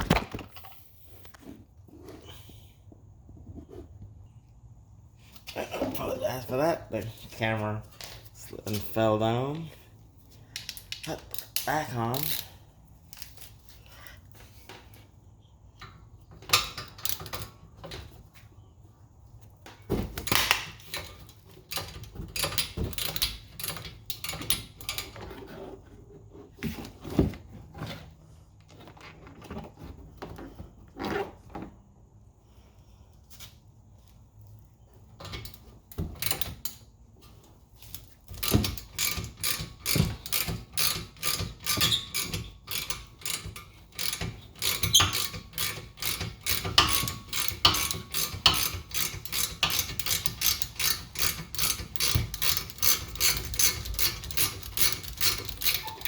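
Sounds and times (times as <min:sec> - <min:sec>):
ratchet wrench clicks: 0:10.6 - 0:12.6, 0:38.4 - 0:56.0.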